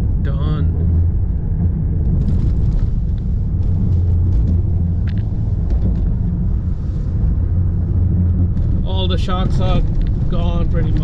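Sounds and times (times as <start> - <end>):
road and tyre rumble: 0.0 - 11.0
knocks and rattles: 0.8 - 6.7, 7.9 - 11.0.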